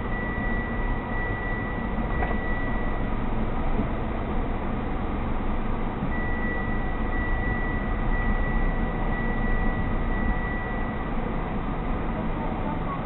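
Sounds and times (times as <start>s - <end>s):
car driving road noise: 0.0s - 13.0s.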